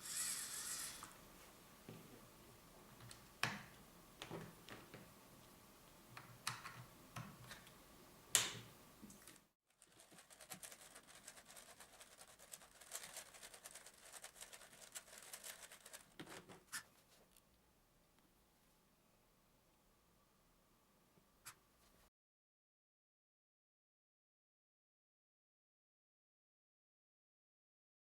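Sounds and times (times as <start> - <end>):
servos turning: 0.0 - 1.2.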